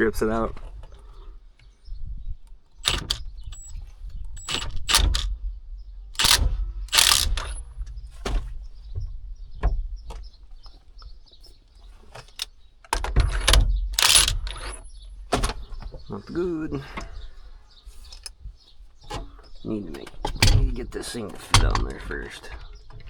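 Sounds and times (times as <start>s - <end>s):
metal parts and tools knocking: 2.8s - 3.7s, 4.4s - 5.3s, 6.2s - 7.7s, 12.3s - 15.6s
metal clatter: 13.1s - 15.7s.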